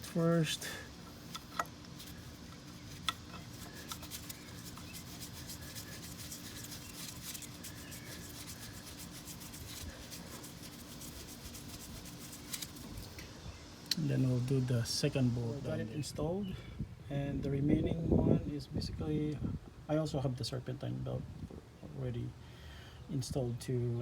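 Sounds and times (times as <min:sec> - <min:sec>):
faint rubbing: 0:00.0 - 0:13.1
steady low hum: 0:00.0 - 0:24.0.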